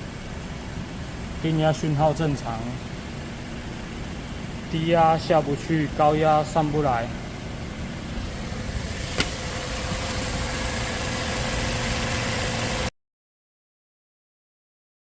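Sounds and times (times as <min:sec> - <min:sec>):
car engine idling: 0:00.0 - 0:12.9
sharp click: 0:09.1 - 0:09.4.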